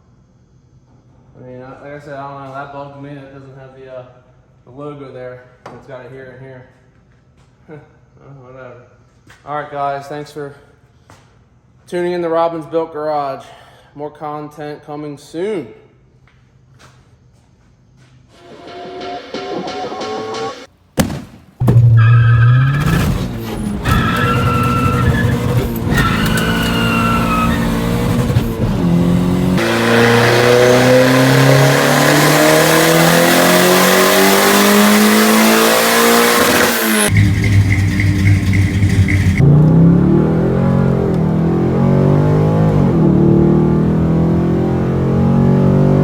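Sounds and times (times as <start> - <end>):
car engine accelerating hard: 21.6 - 46.0.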